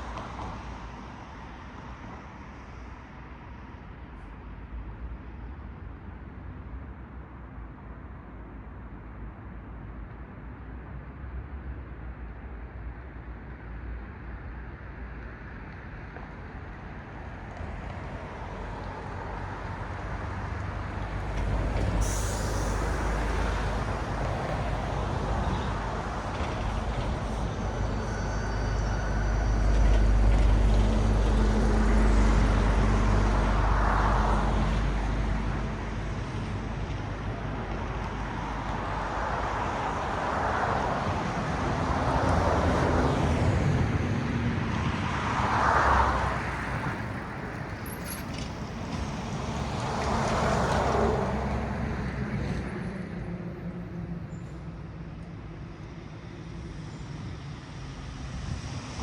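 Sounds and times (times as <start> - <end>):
cars passing with tyre noise: 0.0 - 59.0
heavy vehicle engine rumble: 17.7 - 39.2.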